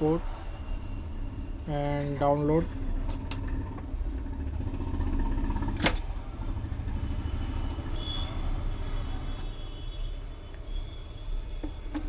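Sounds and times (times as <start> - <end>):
low engine rumble: 0.4 - 9.2.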